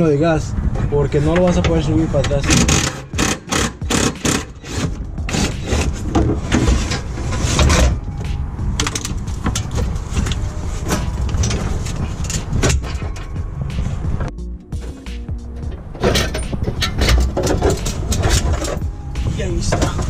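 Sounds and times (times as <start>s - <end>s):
hand tools knocking and clanking: 1.3s - 8.0s, 15.6s - 20.0s.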